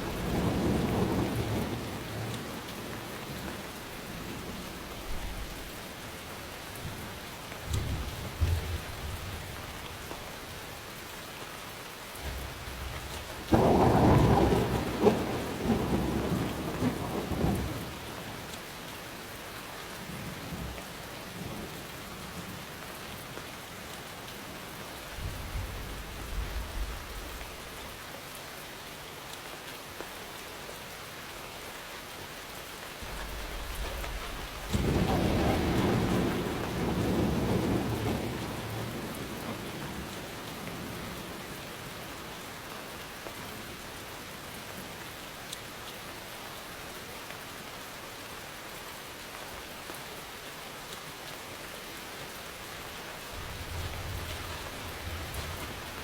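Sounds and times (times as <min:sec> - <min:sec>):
thunder rumbling: 0:00.0 - 0:05.8, 0:12.2 - 0:18.3, 0:33.0 - 0:42.0, 0:52.8 - 0:56.0
steady rain hissing: 0:00.0 - 0:56.0.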